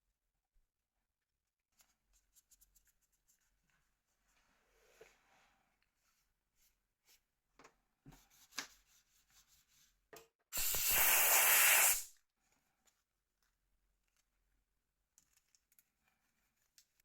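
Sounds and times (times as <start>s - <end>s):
compressed air spray hiss: 10.6s - 12.1s.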